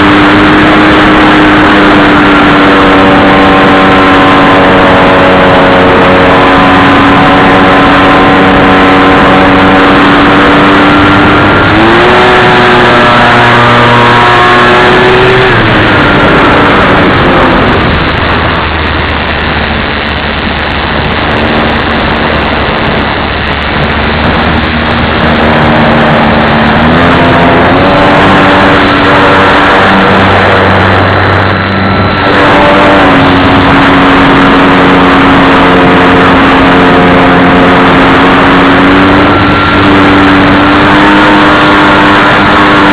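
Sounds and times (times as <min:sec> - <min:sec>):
rushing noise: 0:00.0 - 0:42.9
model plane motor and propeller: 0:29.9 - 0:42.9.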